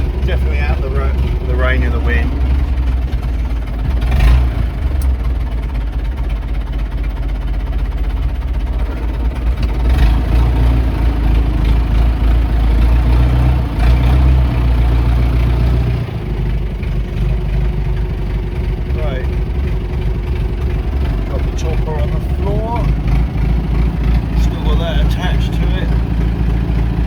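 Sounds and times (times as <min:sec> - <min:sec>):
tractor diesel engine idling: 0:00.0 - 0:27.0.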